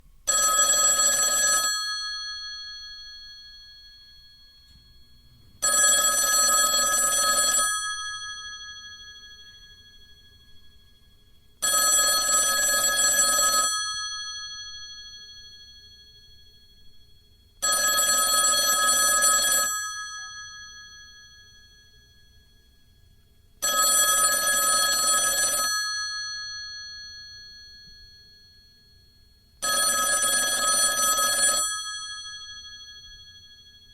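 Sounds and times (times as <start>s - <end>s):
telephone bell ringing: 0.3s - 23.0s, 23.6s - 33.9s.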